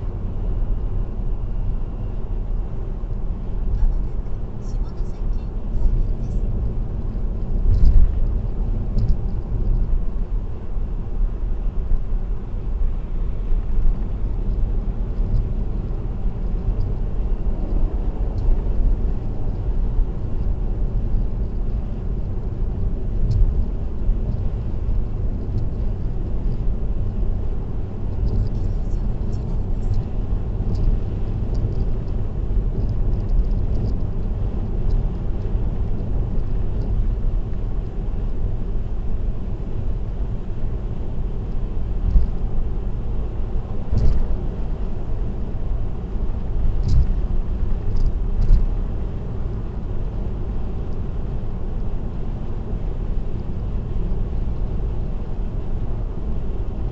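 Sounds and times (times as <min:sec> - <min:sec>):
tyre and road noise: 0:00.0 - 0:56.9.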